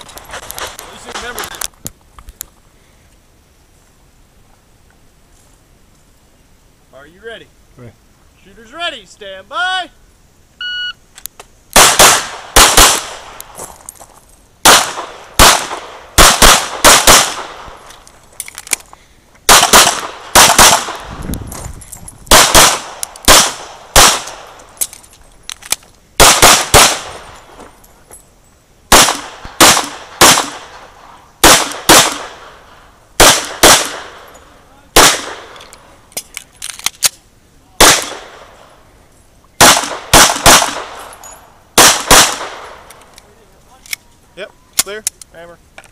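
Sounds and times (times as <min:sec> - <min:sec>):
shot timer beep: 0:10.6 - 0:11.0
pistol shots: 0:11.7 - 0:13.4, 0:14.6 - 0:17.8, 0:19.5 - 0:21.1, 0:22.3 - 0:24.6, 0:26.2 - 0:27.3, 0:28.9 - 0:32.6, 0:33.2 - 0:34.3, 0:35.0 - 0:35.6, 0:37.8 - 0:38.5, 0:39.6 - 0:41.1, 0:41.8 - 0:42.8.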